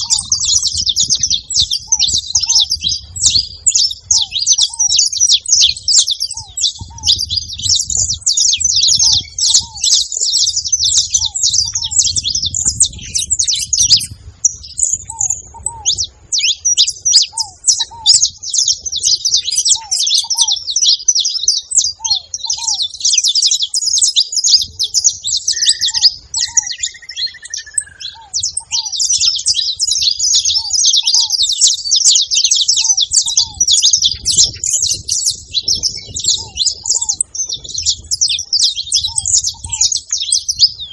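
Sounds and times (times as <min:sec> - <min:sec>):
finches singing and chattering: 0:00.0 - 0:40.9
low two-note bird call: 0:25.5 - 0:28.4.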